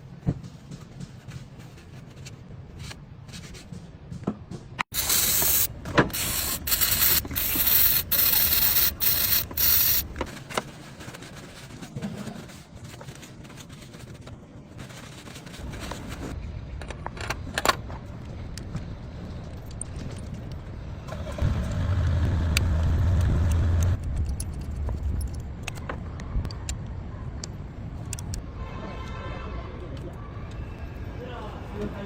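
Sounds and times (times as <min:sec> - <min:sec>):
pressurised spray hissing: 0:04.9 - 0:10.0.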